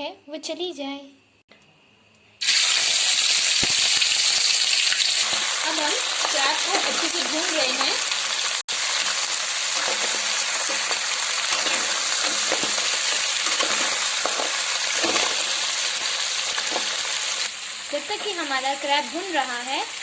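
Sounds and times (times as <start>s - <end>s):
crabs sizzling in oil: 2.4s - 20.0s.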